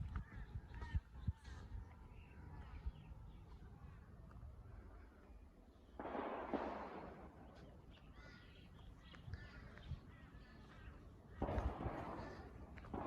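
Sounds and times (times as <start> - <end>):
birds cawing: 8.1 - 8.7.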